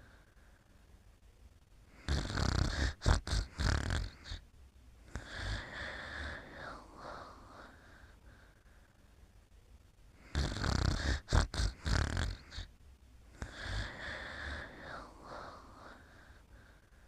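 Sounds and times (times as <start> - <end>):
person snoring: 1.9 - 4.4, 5.1 - 8.2, 10.2 - 12.7, 13.3 - 16.8.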